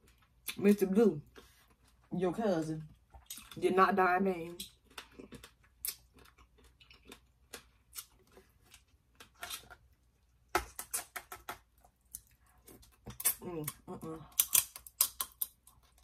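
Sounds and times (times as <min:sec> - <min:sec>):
mouth chewing: 0:04.5 - 0:09.6
crab shell cracking and crunching: 0:04.5 - 0:16.0.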